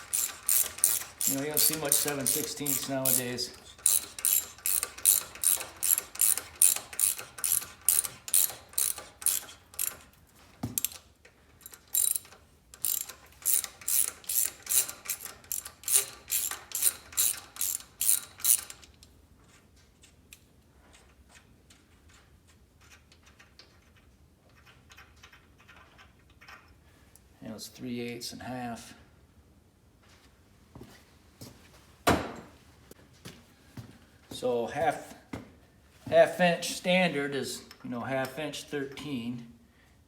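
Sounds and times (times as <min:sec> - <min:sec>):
ratchet wrench clicking: 0:00.0 - 0:11.0, 0:11.6 - 0:18.9.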